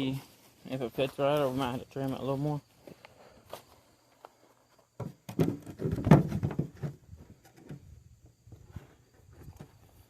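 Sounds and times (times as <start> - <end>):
plastic panel knocking and rattling: 5.0 - 8.0.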